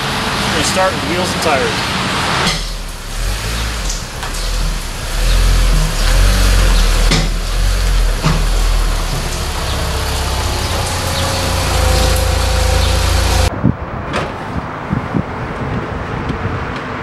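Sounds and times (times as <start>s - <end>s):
car engine deep rumble: 2.5s - 14.1s.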